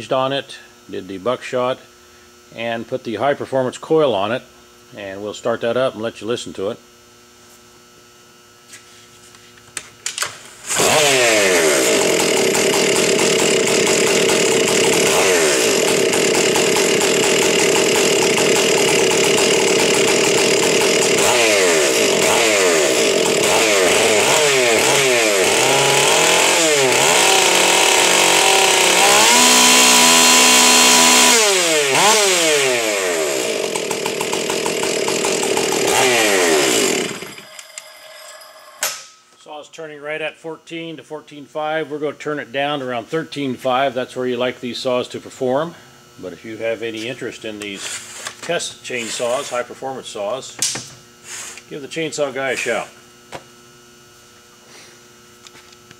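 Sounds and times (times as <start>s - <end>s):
chainsaw running at high revs: 10.6s - 38.4s, 48.9s - 49.9s.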